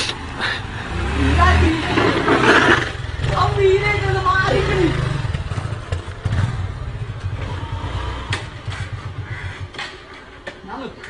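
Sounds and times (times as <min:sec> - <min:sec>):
motorcycle engine rumbling: 0:00.0 - 0:11.0.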